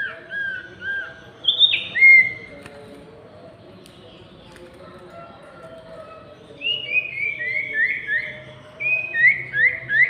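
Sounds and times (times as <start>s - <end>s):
songbird whistling: 0.0s - 2.5s.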